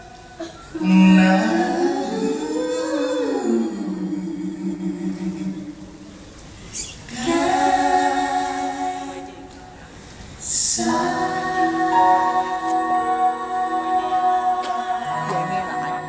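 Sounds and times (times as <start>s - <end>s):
long held sung notes: 7.1s - 16.0s.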